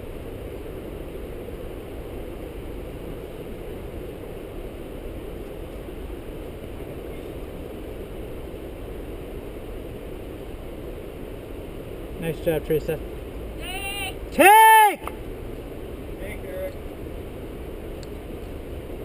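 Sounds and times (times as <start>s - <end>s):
wind rumbling on microphone: 0.0s - 14.4s.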